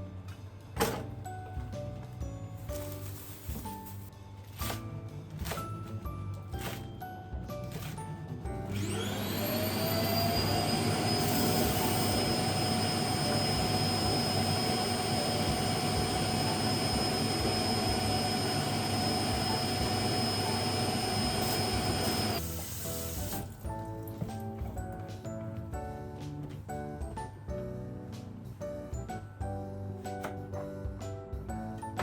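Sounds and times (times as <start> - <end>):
small electric motor whining: 8.7 - 22.4.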